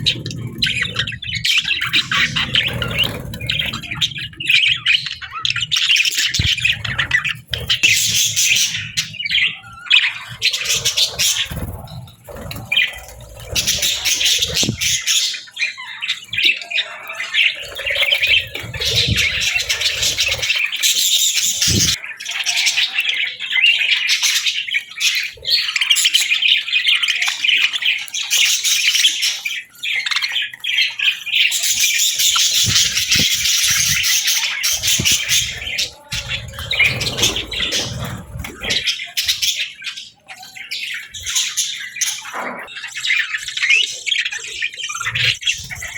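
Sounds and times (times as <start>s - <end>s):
bird squawk: 0.0s - 27.1s, 31.5s - 45.9s
budgerigars chattering: 0.0s - 45.9s.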